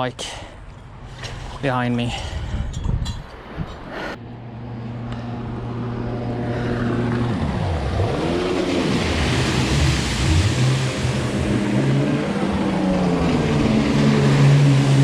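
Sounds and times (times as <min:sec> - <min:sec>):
motor engine passing: 0:03.4 - 0:15.0.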